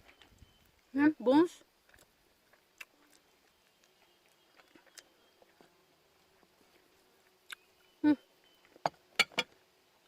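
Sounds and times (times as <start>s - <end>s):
faint chewing clicks: 1.8s - 7.7s.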